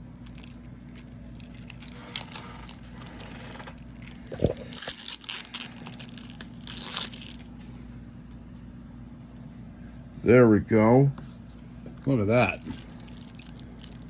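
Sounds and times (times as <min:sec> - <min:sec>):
steady low hum: 0:00.0 - 0:14.0
plastic wrapping crinkling and tearing: 0:00.2 - 0:07.7, 0:12.4 - 0:14.0.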